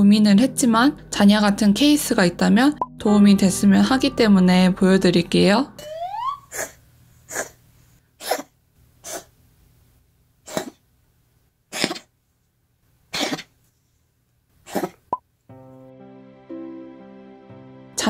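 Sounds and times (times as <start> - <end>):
cat coughing: 8.2 - 9.3, 10.4 - 10.8, 11.7 - 12.1, 13.1 - 13.5, 14.7 - 15.1.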